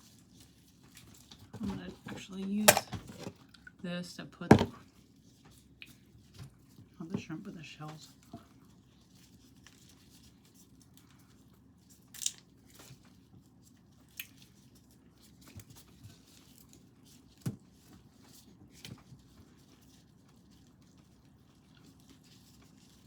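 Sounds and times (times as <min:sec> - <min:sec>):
shrimp shells crackling and snapping: 0:12.1 - 0:12.5.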